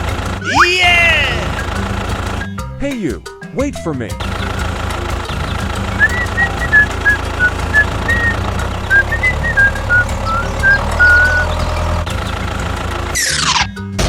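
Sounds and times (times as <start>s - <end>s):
high chirping notes: 0.4s - 1.9s, 5.9s - 12.0s
vehicle engine humming: 1.2s - 2.6s, 4.3s - 13.2s.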